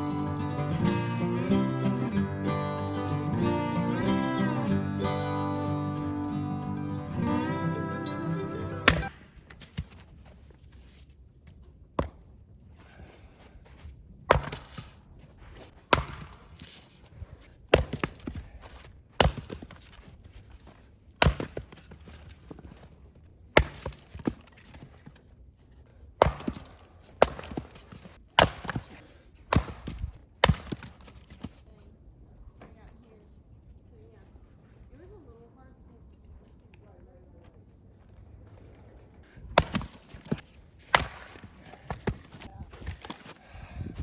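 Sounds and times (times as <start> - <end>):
axe chopping firewood: 12.0 - 12.3, 14.3 - 15.0, 15.8 - 16.8, 17.7 - 20.0, 21.2 - 22.4, 23.5 - 24.9, 26.2 - 31.5, 39.4 - 43.4
wood splitting crackle: 15.8 - 16.8, 39.6 - 43.3.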